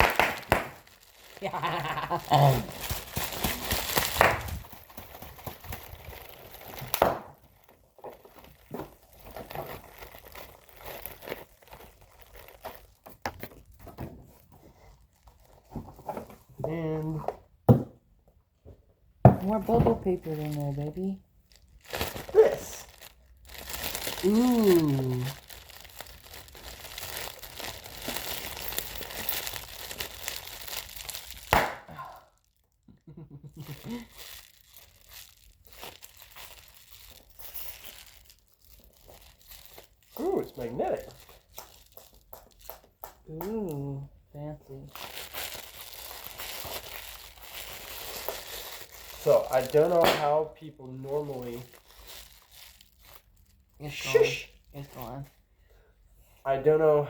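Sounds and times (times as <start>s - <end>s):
sharp crackle: 0.0s - 13.4s, 21.5s - 31.9s, 33.4s - 43.8s
bubble wrap crinkling: 0.0s - 17.2s, 19.4s - 55.5s.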